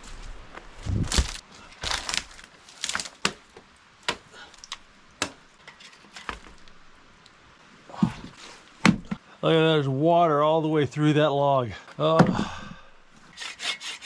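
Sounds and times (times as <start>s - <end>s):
wood cracking and splintering: 0.9s - 6.8s.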